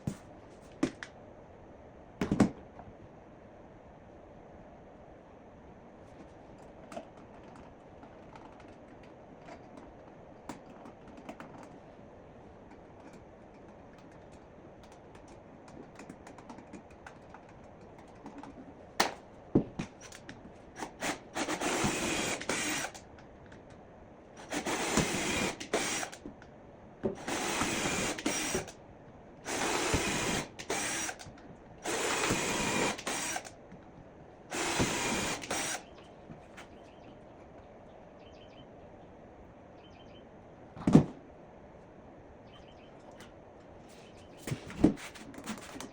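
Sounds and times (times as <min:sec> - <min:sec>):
power drill driving screws: 0:20.8 - 0:23.0, 0:24.4 - 0:26.2, 0:27.2 - 0:28.7, 0:29.5 - 0:31.2, 0:31.8 - 0:33.5, 0:34.5 - 0:35.8.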